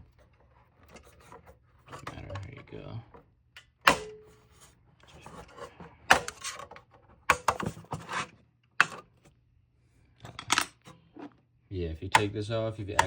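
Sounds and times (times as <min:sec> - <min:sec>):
hard plastic clicks and knocks: 0:12.1 - 0:12.3.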